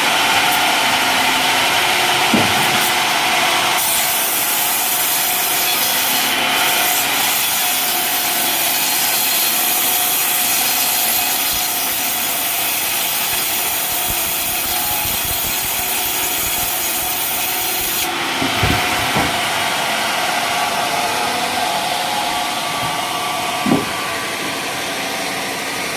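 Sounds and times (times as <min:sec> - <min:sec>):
sawmill saw cutting timber: 0:00.0 - 0:25.9
wooden knocks: 0:02.3 - 0:02.8, 0:18.4 - 0:19.4, 0:23.6 - 0:24.0.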